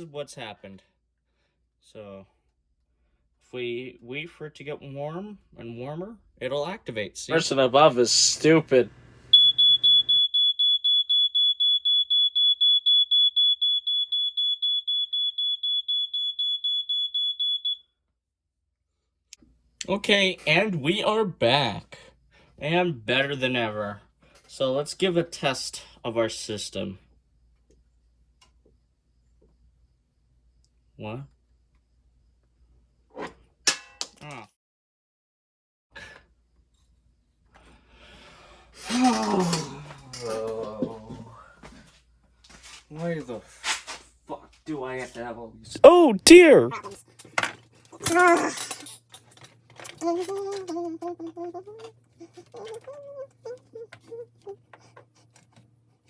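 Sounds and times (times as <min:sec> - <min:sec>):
smoke alarm beeping rapidly: 0:09.3 - 0:17.8
murmured vocal sounds: 0:45.8 - 0:46.8.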